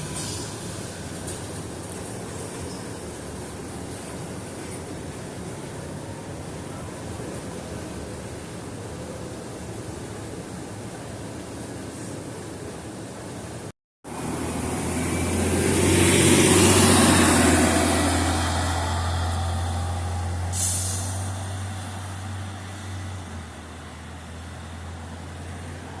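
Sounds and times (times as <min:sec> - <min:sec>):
air brake hiss: 0:00.0 - 0:00.7, 0:20.4 - 0:21.4
bus passing: 0:00.0 - 0:26.0.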